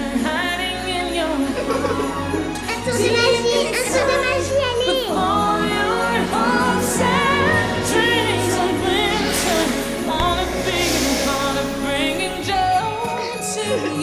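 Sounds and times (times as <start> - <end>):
shaken tinkling sleigh rattle: 0.0 - 14.0
voices singing over instruments: 0.0 - 14.0.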